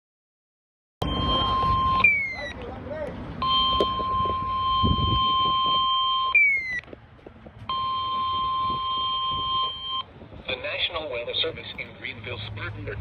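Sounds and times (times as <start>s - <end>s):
electronic alert beep: 1.0s - 2.6s, 3.4s - 6.8s, 7.7s - 10.1s.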